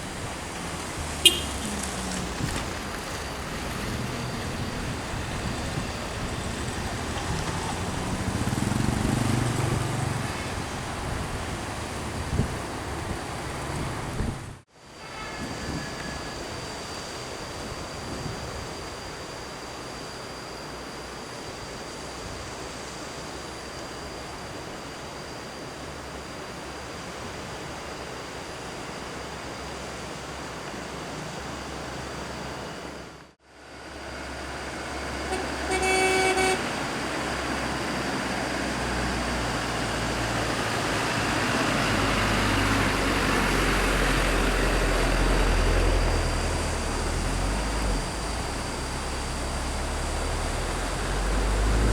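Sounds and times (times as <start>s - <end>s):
wind on microphone: 0.0s - 14.6s, 40.6s - 51.9s
heavy vehicle engine approaching: 0.0s - 14.7s, 31.0s - 51.9s
vehicle horn: 1.1s - 2.6s, 15.0s - 16.4s, 35.2s - 37.0s.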